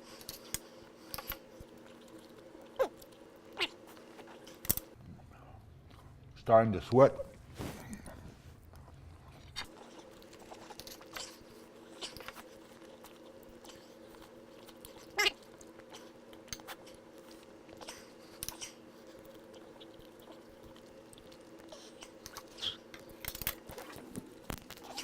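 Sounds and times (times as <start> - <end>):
low steady hum: 0.0 - 25.0
person chewing: 8.7 - 25.0.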